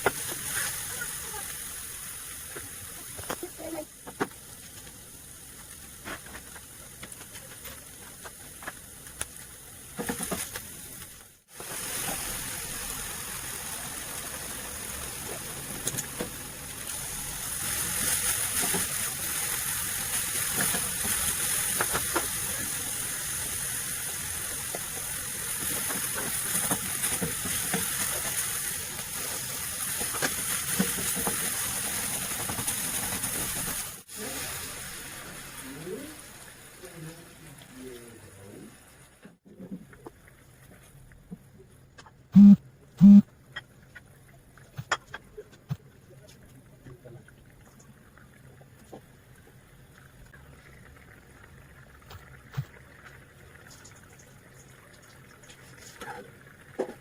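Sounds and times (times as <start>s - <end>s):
food sizzling in a frying pan: 0.0s - 39.4s.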